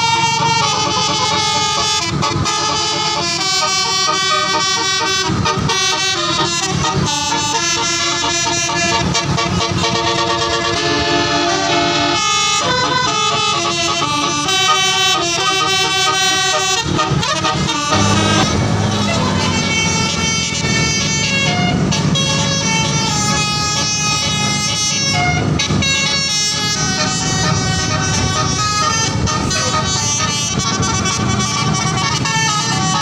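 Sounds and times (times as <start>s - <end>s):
multi-tone bus horn playing tune: 0.0s - 33.0s.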